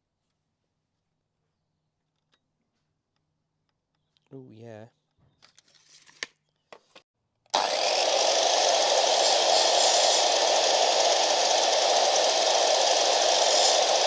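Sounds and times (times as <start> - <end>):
mitre saw motor and blade running: 7.6 - 14.0.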